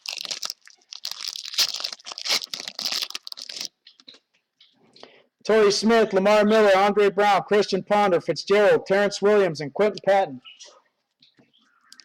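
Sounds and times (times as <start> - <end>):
foil wrapper crinkling and tearing: 0.0 - 4.1.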